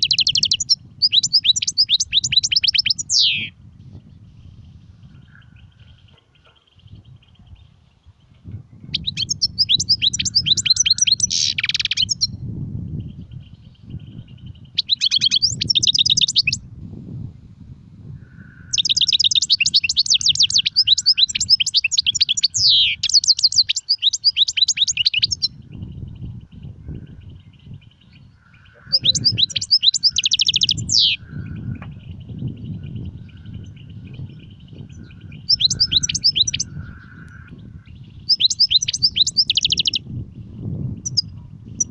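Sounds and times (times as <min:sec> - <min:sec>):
finch singing fast twittering phrases: 0:00.0 - 0:03.5, 0:08.9 - 0:12.3, 0:13.9 - 0:16.6, 0:18.7 - 0:26.3, 0:27.1 - 0:40.0, 0:40.9 - 0:41.9.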